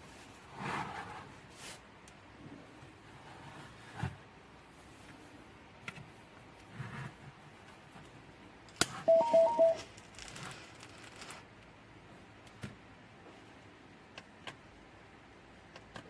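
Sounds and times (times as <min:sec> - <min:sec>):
short electronic beeps: 0:09.1 - 0:09.8.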